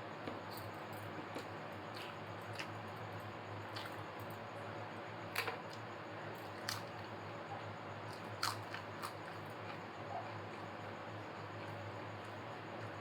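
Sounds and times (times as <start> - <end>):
steady low hum: 0.0 - 13.0
mouth clicks and crunches: 8.1 - 9.4.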